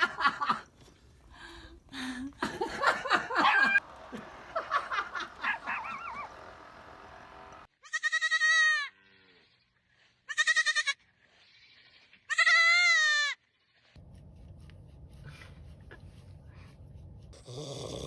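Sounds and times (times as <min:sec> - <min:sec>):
goat bleating: 0:07.8 - 0:09.2, 0:10.3 - 0:11.0, 0:11.6 - 0:13.4.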